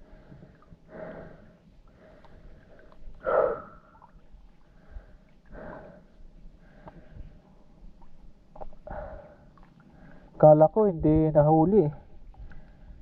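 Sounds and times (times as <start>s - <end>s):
person breathing heavily: 0.0s - 3.8s, 8.8s - 10.4s.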